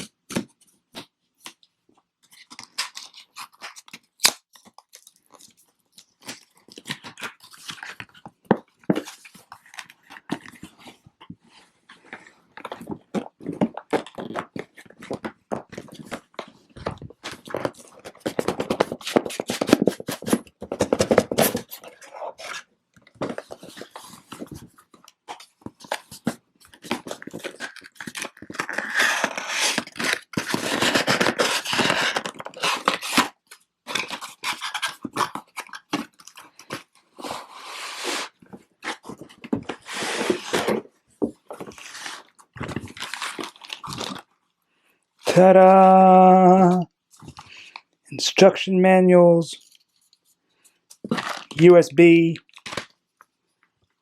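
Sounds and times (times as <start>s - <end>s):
cardboard and packaging rustling: 0.0s - 44.4s, 45.2s - 47.9s, 49.5s - 53.0s.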